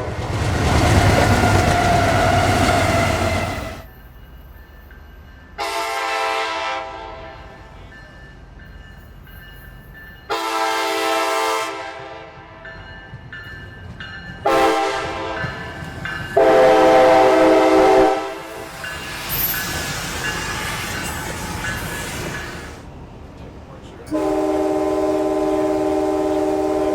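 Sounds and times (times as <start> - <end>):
locomotive air horn blasts: 5.6 - 7.6, 10.3 - 12.5, 14.5 - 15.5, 16.4 - 18.7, 24.1 - 26.9.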